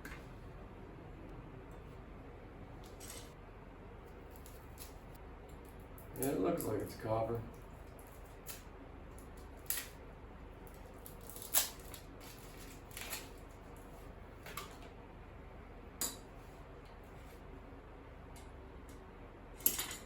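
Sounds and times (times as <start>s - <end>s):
small metal and plastic parts clinking: 19.6s - 20.0s.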